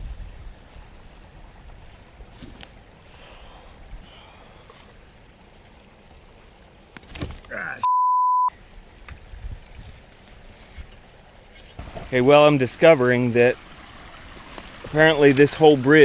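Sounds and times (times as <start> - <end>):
low outdoor background hiss: 0.0 - 7.6, 8.5 - 16.0
person's voiced outburst: 7.5 - 7.9
censor bleep: 7.8 - 8.5.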